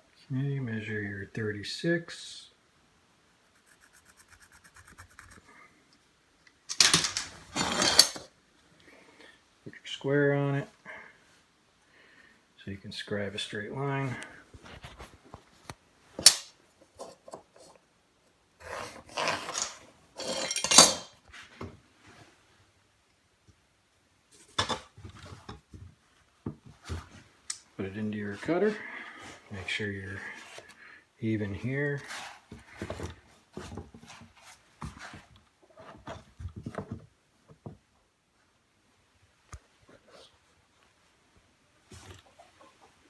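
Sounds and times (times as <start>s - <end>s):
square clicking and clinking: 6.7s - 8.2s, 16.2s - 16.5s, 19.2s - 21.1s.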